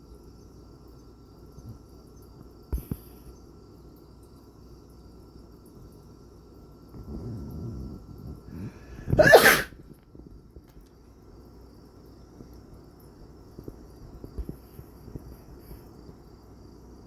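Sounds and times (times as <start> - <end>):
cat sneezing: 9.1 - 9.8.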